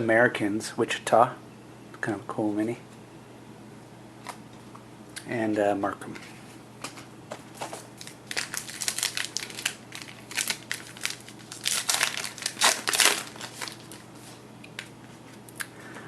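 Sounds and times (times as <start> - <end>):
card pack wrapper crinkling: 7.6 - 14.9.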